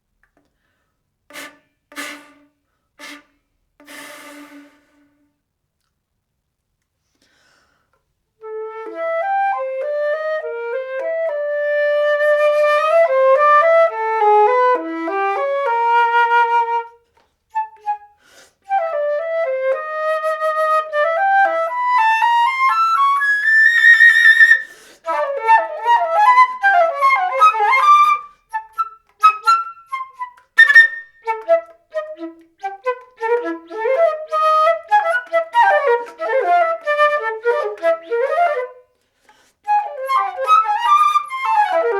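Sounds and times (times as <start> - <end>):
solo flute playing: 8.4 - 39.0, 39.6 - 41.9.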